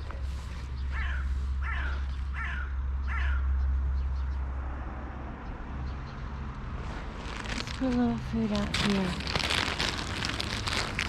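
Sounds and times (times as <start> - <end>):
crow cawing: 0.9 - 3.5.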